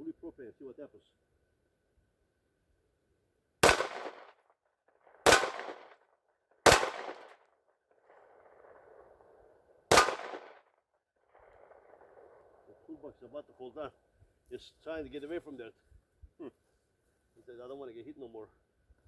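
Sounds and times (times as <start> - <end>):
pistol shots echoing: 3.6 - 4.4, 5.2 - 6.0, 6.6 - 7.3, 9.9 - 10.6.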